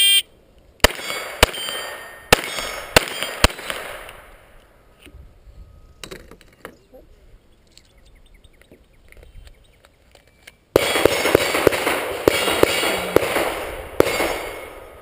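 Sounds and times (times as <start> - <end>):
pistol shots: 0.8 - 4.4, 10.8 - 15.0.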